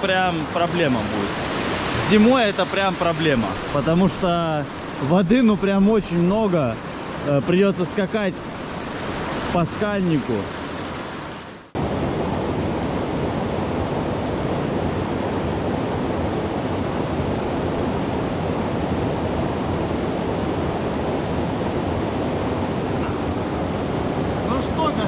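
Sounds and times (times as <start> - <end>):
river water rushing: 0.0 - 25.0.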